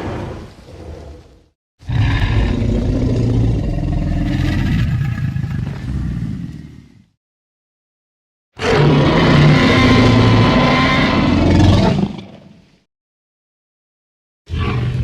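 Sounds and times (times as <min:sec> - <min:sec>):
dinosaur roaring: 0:01.8 - 0:07.0, 0:08.6 - 0:12.4.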